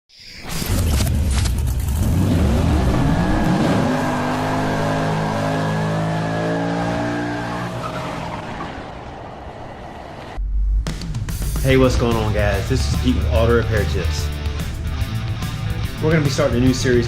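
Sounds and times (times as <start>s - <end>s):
car engine revving: 0.9s - 10.4s.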